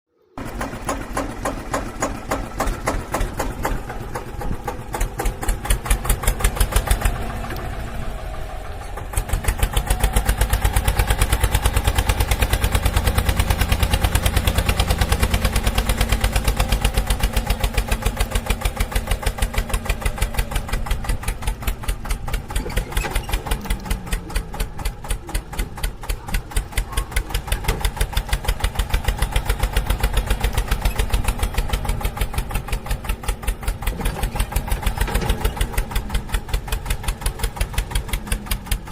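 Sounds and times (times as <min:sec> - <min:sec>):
tractor diesel engine running: 0:00.2 - 0:38.9.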